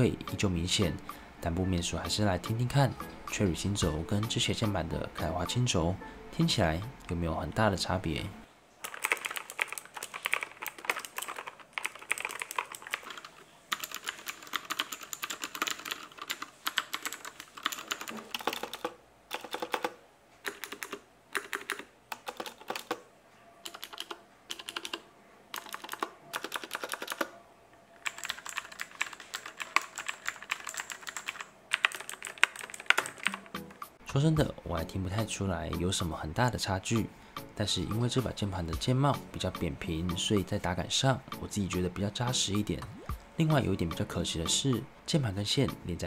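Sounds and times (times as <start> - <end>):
clicky mechanical keyboard typing: 8.8 - 23.0, 23.6 - 27.3, 28.0 - 33.9.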